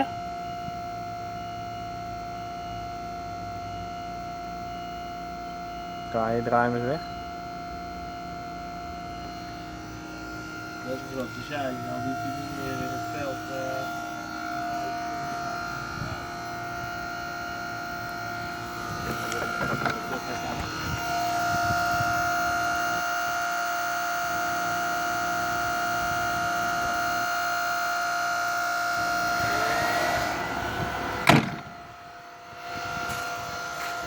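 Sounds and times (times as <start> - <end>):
hydraulic pump whining: 0.0 - 34.0
sharp knock: 31.2 - 31.7.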